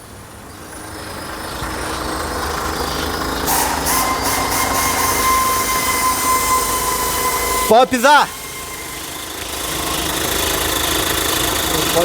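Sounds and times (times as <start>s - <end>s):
car engine idling: 0.0s - 12.0s
steady whine: 2.5s - 12.0s
brief hisses: 3.5s - 5.6s.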